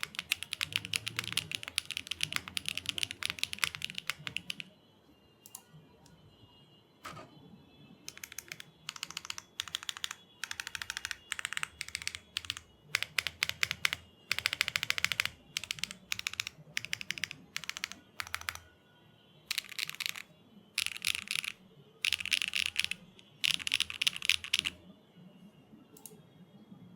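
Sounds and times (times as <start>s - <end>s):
mechanical keyboard typing: 0.0s - 4.7s, 8.1s - 18.7s, 19.5s - 24.8s.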